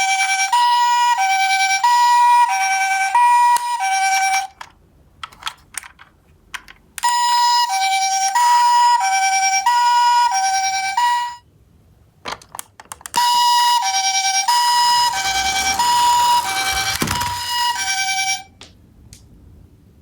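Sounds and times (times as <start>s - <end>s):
two-tone ambulance siren: 0.0s - 4.5s, 7.0s - 11.4s, 13.2s - 18.5s.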